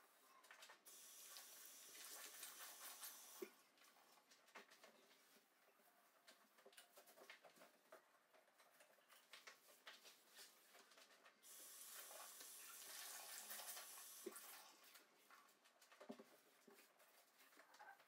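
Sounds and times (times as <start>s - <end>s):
sink tap running: 0.9s - 3.5s, 11.4s - 14.7s.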